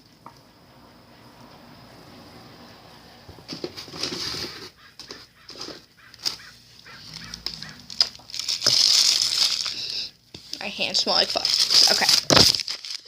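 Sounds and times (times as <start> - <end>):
plastic packaging rustling: 3.5 - 13.0.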